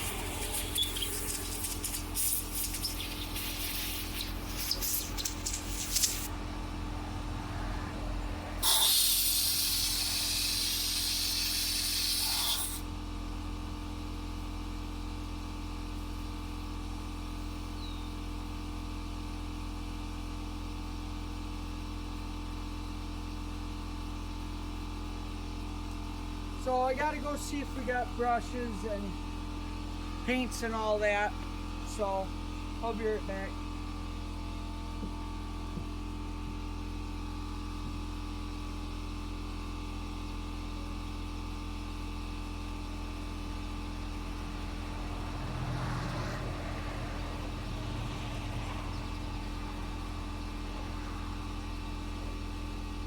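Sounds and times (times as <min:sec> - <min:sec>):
spray hissing: 0:00.0 - 0:06.3, 0:08.6 - 0:12.8
electrical hum: 0:00.0 - 0:53.0.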